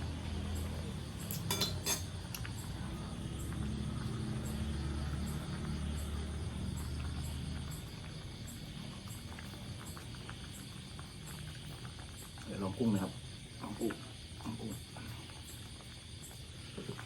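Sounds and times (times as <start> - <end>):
crickets chirping: 0.0 - 17.0
utensils clinking against dishes: 1.2 - 2.2.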